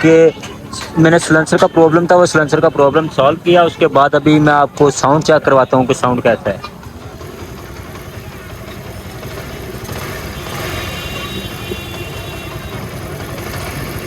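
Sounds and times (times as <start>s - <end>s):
motorcycle engine idling: 0.1s - 14.0s.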